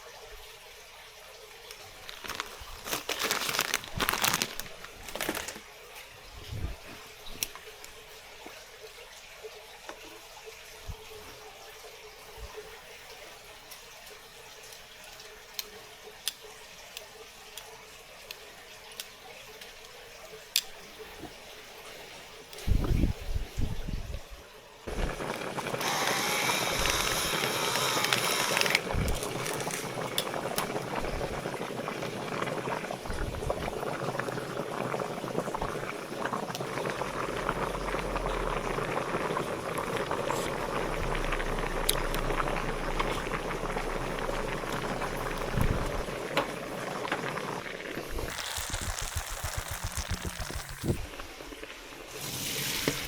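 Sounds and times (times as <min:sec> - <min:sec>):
water bubbling: 0:28.8 - 0:52.1.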